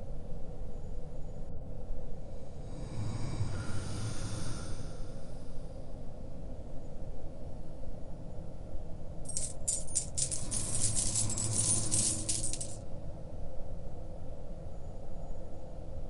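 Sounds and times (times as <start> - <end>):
metal coins clinking and jingling: 9.3 - 12.8.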